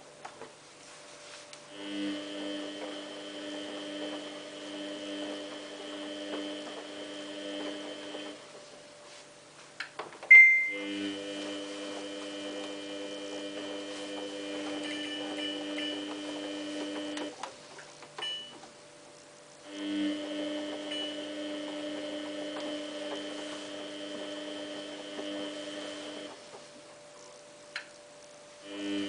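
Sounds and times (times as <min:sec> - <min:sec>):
washing machine humming: 0:00.0 - 0:29.0
high beep: 0:10.3 - 0:10.8.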